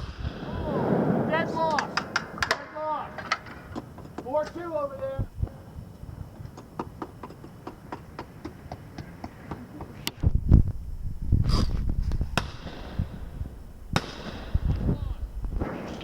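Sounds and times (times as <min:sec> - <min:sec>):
shotgun shots: 0:00.0 - 0:03.7, 0:14.0 - 0:14.7, 0:15.6 - 0:16.0.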